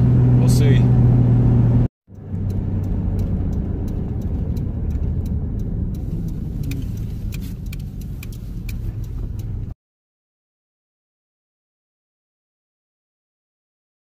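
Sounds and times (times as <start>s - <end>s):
van engine and tyres rumbling: 0.0s - 9.8s
light clicks and crackles: 2.2s - 9.8s.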